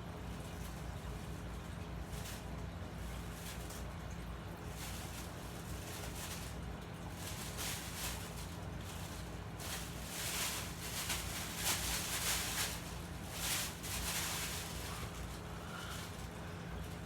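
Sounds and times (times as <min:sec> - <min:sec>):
low electrical hum: 0:00.0 - 0:17.0
person breathing heavily: 0:14.9 - 0:16.6.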